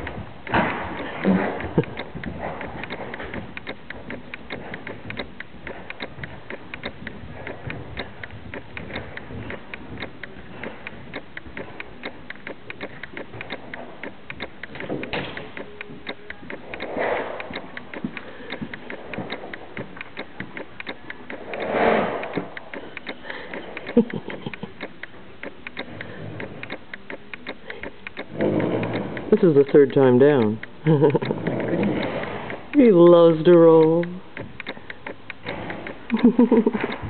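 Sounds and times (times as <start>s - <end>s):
horse hooves running: 0.0s - 37.0s.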